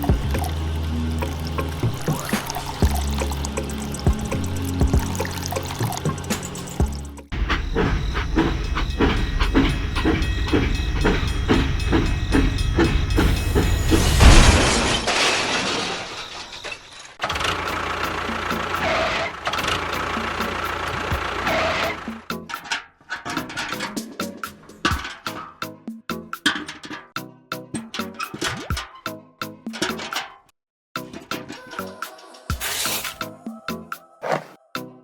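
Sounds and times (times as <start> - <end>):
rhythmic knocking: 0.0 - 14.0
model construction machine running: 0.0 - 14.2, 17.2 - 22.2.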